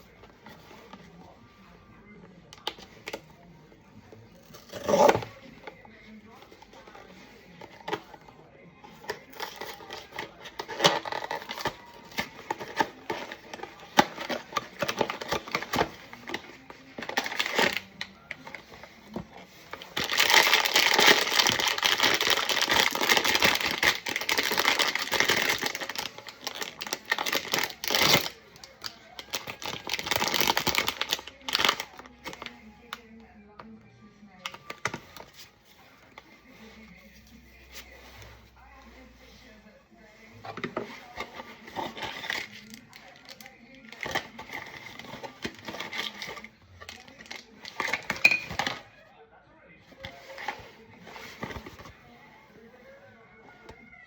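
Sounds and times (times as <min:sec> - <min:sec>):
wrapper crinkling: 0:08.9 - 0:32.6, 0:40.7 - 0:48.8.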